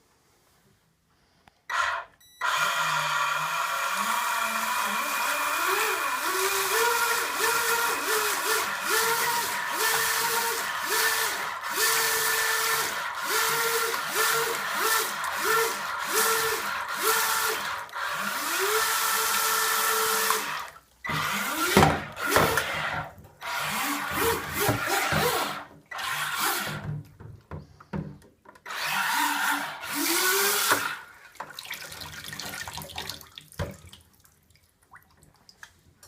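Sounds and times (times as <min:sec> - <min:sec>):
small motor whining: 0:01.7 - 0:26.9, 0:28.6 - 0:31.1.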